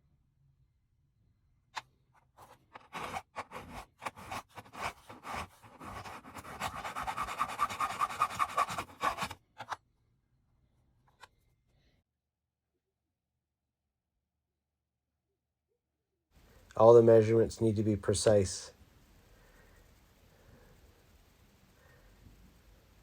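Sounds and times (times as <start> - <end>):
hand file rasping on metal: 2.4 - 9.4.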